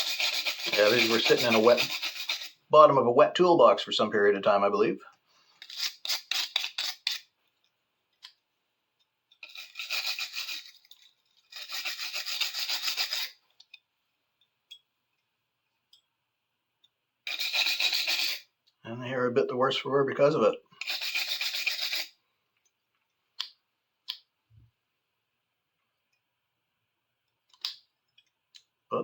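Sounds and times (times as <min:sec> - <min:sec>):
brush scrubbing rusty metal: 0:00.0 - 0:02.6, 0:05.6 - 0:07.3, 0:09.4 - 0:13.4, 0:17.3 - 0:18.4, 0:20.8 - 0:22.1.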